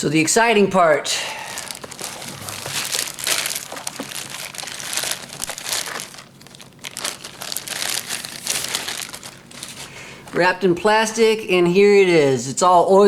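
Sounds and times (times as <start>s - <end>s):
plastic wrapping crinkling: 1.2s - 10.5s.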